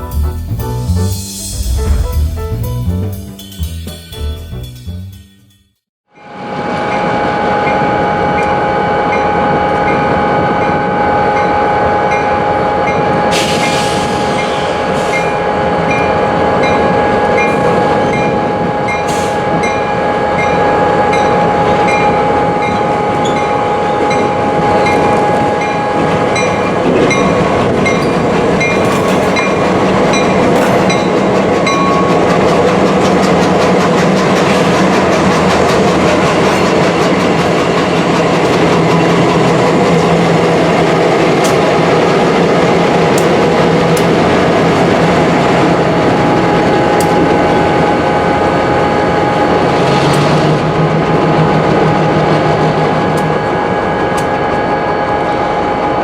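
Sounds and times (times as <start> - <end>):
freight train running: 0.0 - 5.3, 6.2 - 56.0
train whine: 0.6 - 3.6, 6.1 - 56.0
sharp metal clanks: 28.6 - 32.6.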